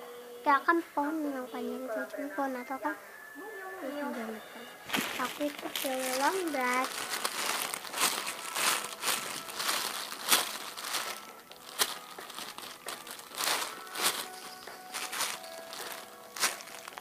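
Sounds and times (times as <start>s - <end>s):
faint music: 0.0s - 17.0s
plastic crinkling and rustling: 4.9s - 17.0s
sharp plastic crackles: 4.9s - 17.0s.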